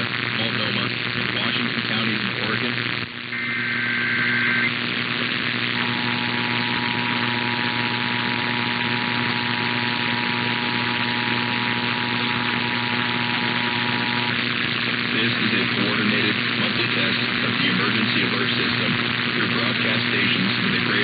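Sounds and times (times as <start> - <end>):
hum and hiss: 0.0 - 21.0
two-tone attention signal: 3.3 - 4.7
screeching data burst: 3.3 - 4.8.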